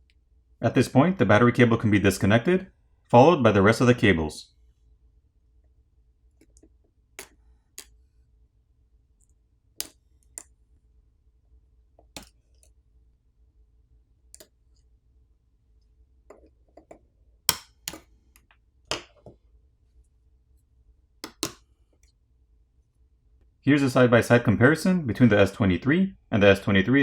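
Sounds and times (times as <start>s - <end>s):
pry tool clicking on phone parts: 6.4s - 7.9s, 12.0s - 12.7s, 17.5s - 19.1s, 21.2s - 21.6s.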